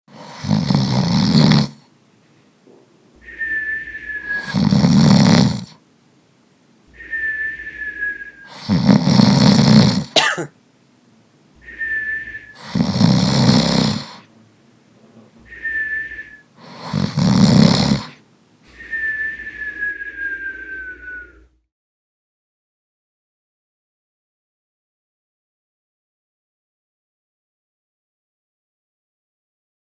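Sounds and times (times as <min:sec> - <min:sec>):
person snoring loudly: 0:00.1 - 0:01.9, 0:03.3 - 0:05.8, 0:07.0 - 0:10.4, 0:11.8 - 0:14.3, 0:15.5 - 0:18.2
whistling breath: 0:03.2 - 0:05.7, 0:06.9 - 0:09.8, 0:11.6 - 0:14.3, 0:15.4 - 0:21.6.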